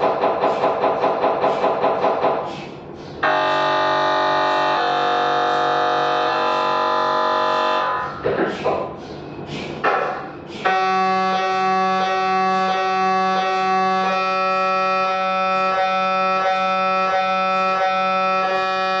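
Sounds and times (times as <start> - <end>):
mri scanner buzzing: 3.2 - 8.1, 10.7 - 19.0.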